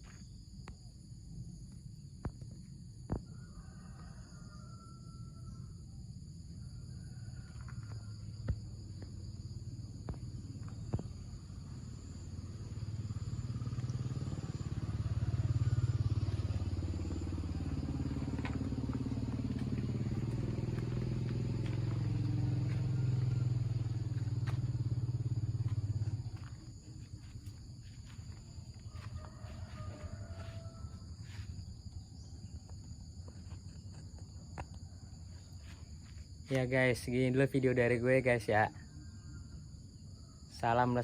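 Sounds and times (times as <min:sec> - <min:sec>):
vehicle engine running: 0:07.6 - 0:36.7.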